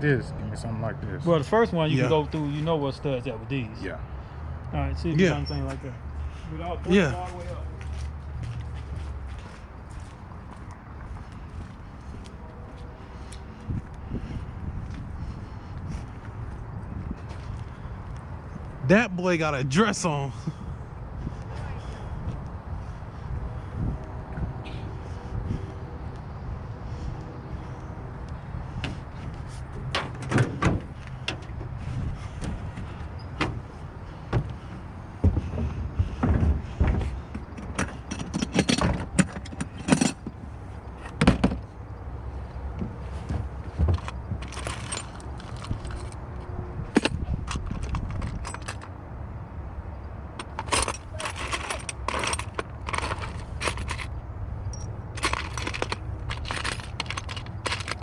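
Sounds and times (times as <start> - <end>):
small metal hardware clinking: 44.0 - 46.2, 47.0 - 48.9, 50.4 - 58.0.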